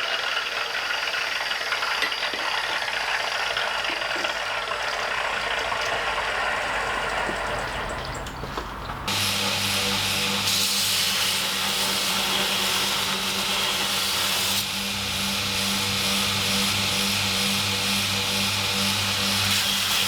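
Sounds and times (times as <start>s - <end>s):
electric machine humming: 9.0s - 20.0s
loud hiss: 9.1s - 20.0s.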